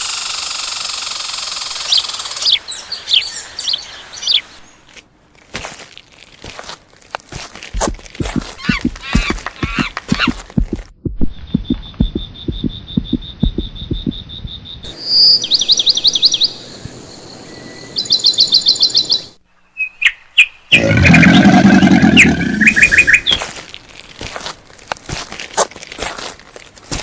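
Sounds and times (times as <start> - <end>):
high bird trill: 11.3 - 23.4
high whistled bird notes: 22.2 - 23.4
short bird chirps: 22.3 - 23.4.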